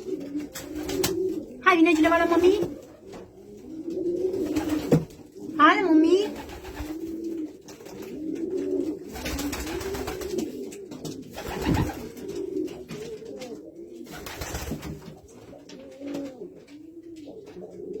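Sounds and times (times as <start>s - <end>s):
pigeons cooing: 0.0s - 18.0s.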